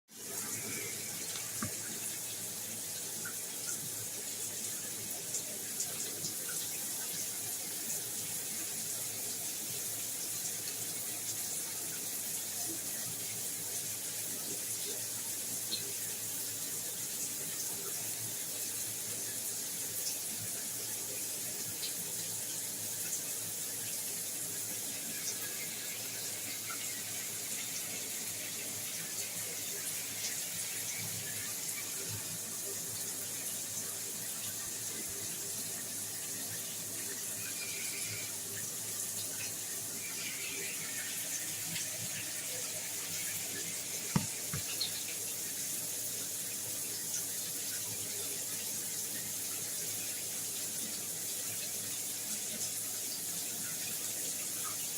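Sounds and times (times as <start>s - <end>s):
shower water running: 0.1s - 54.9s.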